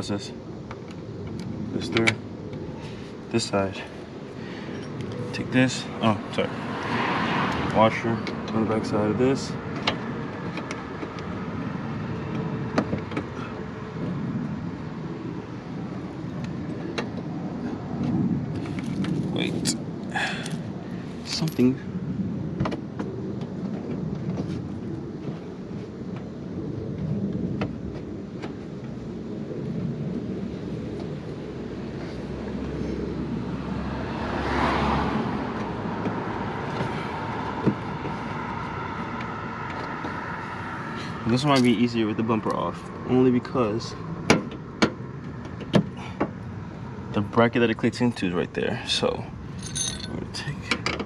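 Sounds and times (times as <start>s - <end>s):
road traffic noise: 0.0s - 51.0s
vehicle passing: 2.6s - 22.6s, 30.2s - 45.4s.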